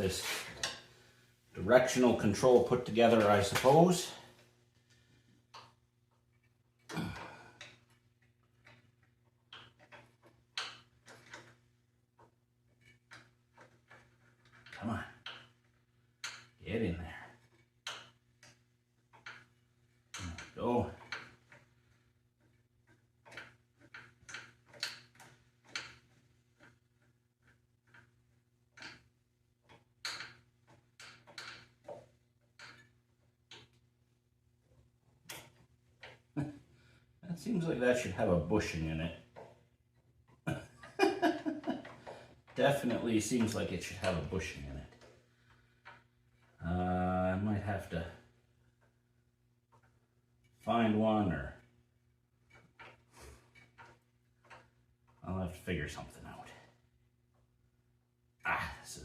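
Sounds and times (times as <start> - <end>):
metal parts clicking and knocking: 4.8 - 37.0, 51.5 - 57.5.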